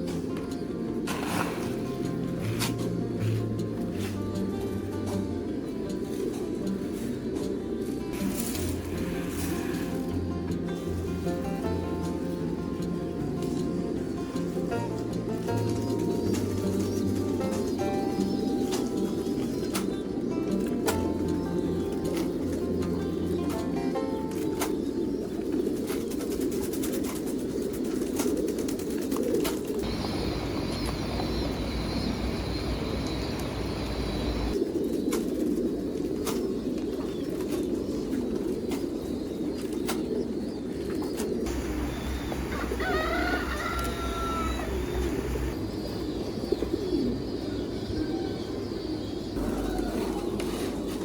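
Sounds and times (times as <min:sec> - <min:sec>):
pigeons cooing: 0:00.0 - 0:51.0
higher-pitched bird calls: 0:29.8 - 0:34.6, 0:41.5 - 0:47.1.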